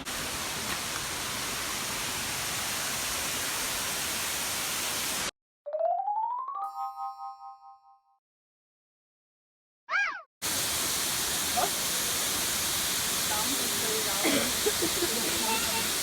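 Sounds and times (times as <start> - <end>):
water rushing: 0.0 - 5.3, 10.4 - 16.0.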